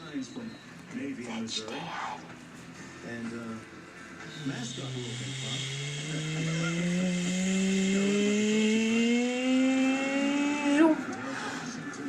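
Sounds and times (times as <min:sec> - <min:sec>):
motor speeding up: 0:04.3 - 0:11.2.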